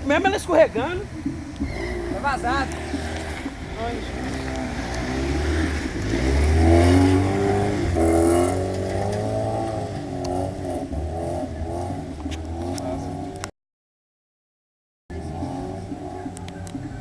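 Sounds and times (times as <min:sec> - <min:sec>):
car engine revving hard: 0:01.9 - 0:13.4, 0:15.1 - 0:16.6.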